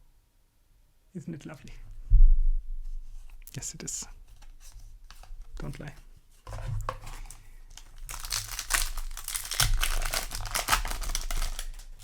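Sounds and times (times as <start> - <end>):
foil wrapper crinkling and tearing: 7.0 - 12.0.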